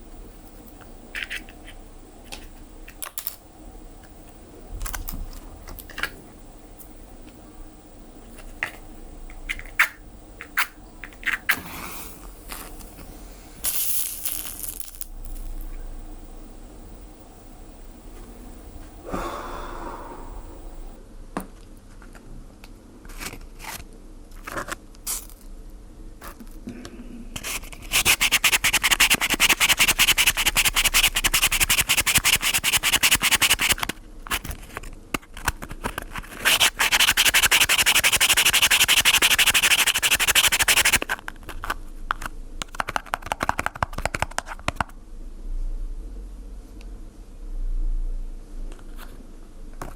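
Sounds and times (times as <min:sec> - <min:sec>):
dense fast crackling sizzle: 0:11.4 - 0:19.1.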